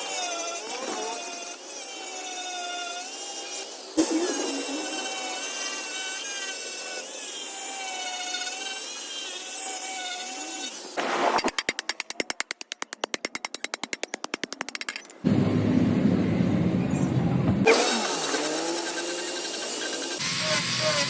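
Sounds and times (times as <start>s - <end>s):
power tool whine: 0.0s - 11.0s, 17.7s - 21.0s.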